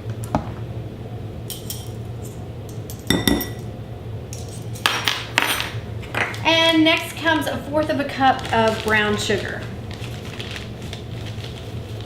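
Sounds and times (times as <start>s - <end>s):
steady low hum: 0.0s - 12.0s
sharp clinks of utensils: 2.8s - 3.6s
metal spoon knocking on bowl: 3.1s - 3.6s.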